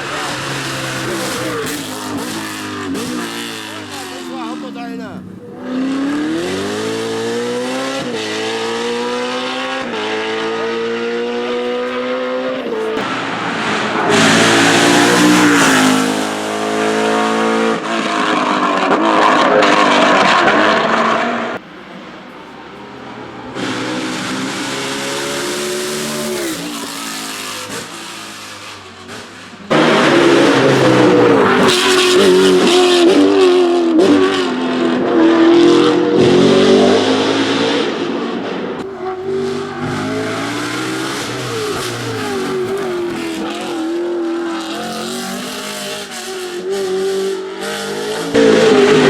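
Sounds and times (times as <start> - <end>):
racing car engine accelerating: 0.0 - 49.0.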